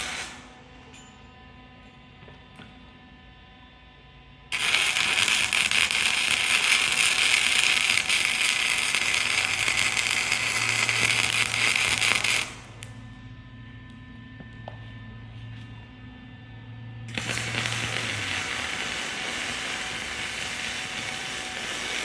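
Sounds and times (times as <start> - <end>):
welding arc crackling: 0.0 - 0.6, 4.5 - 13.0, 17.1 - 22.0.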